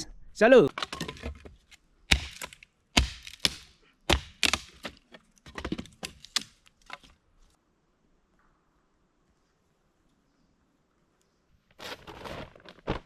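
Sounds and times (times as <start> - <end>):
chopping wood blows: 2.1 - 6.6.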